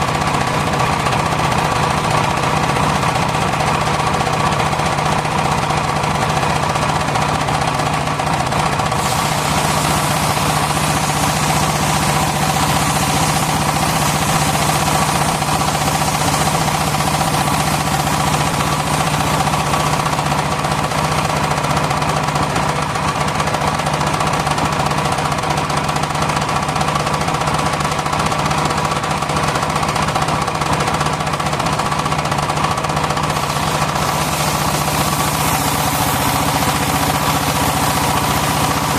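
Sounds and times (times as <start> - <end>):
sawmill machine hum: 0.0 - 38.9
bright hiss: 9.0 - 21.2, 33.3 - 38.9.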